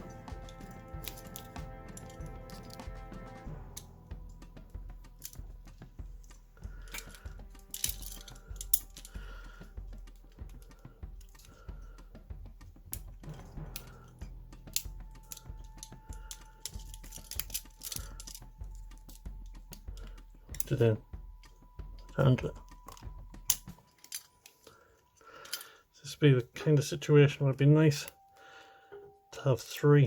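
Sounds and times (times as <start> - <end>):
handcuffs clicking and tapping: 0.0 - 24.8, 25.4 - 25.8
faint background music: 0.0 - 30.0.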